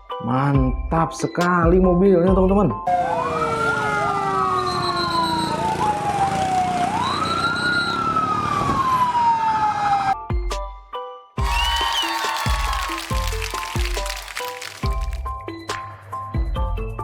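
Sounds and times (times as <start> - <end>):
siren wailing: 2.9 - 10.2.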